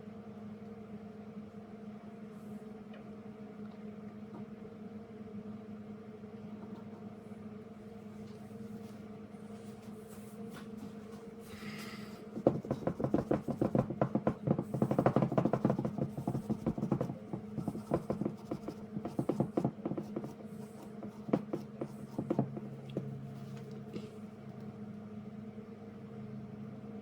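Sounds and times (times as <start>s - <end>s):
steady low hum: 0.0s - 27.0s.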